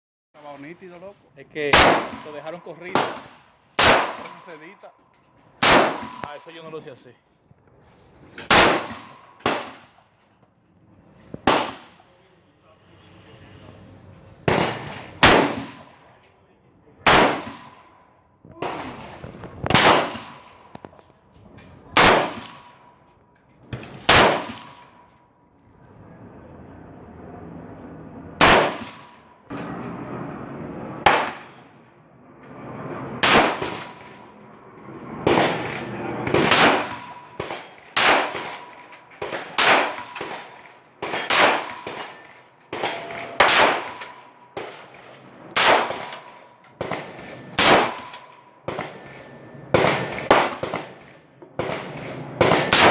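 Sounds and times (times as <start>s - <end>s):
rifle shots with echo: 1.7s - 4.7s, 5.6s - 6.9s, 8.4s - 10.0s, 11.4s - 11.9s, 14.5s - 16.0s, 17.0s - 17.8s, 18.6s - 20.7s, 21.9s - 22.9s, 23.7s - 25.0s, 28.4s - 29.8s, 31.0s - 31.7s, 33.2s - 34.2s, 35.1s - 52.9s.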